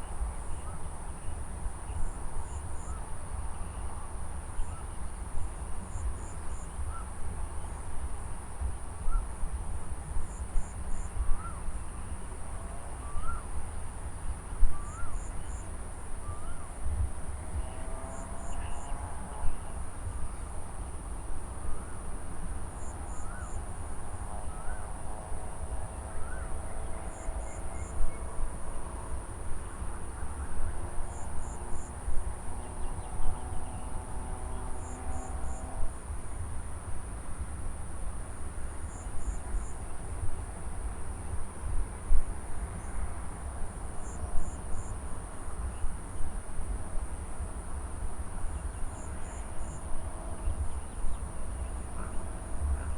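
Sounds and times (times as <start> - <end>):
cricket drone: 0.0 - 52.9
insect pulsed call: 10.3 - 13.6, 14.7 - 16.7, 22.8 - 23.7.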